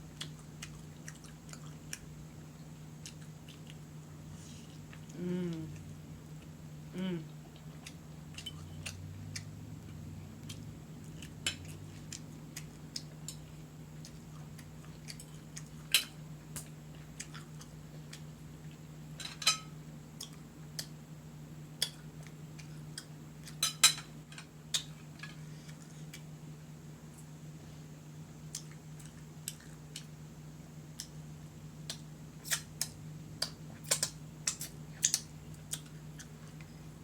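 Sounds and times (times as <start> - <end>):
steady low hum: 0.0 - 37.0
cutlery clicks and clinks: 19.2 - 19.7.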